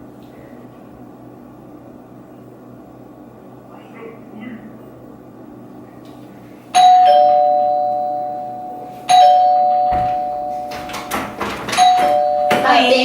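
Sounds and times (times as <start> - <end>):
two-tone doorbell chime: 6.8 - 11.1, 11.7 - 13.0.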